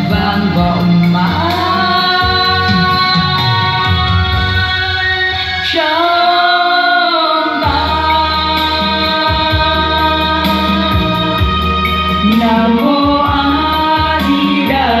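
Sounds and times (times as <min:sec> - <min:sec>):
instrumental accompaniment: 0:00.0 - 0:15.0.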